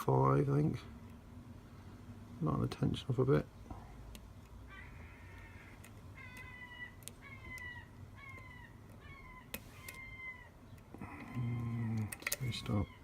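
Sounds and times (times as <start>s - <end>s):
lock picking ticks: 4.0s - 12.8s.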